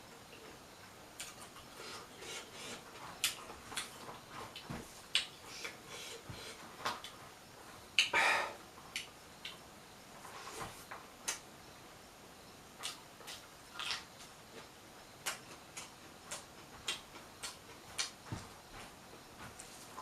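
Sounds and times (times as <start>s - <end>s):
chewing with wet mouth clicks: 1.2s - 1.7s, 3.2s - 5.8s, 12.8s - 18.2s.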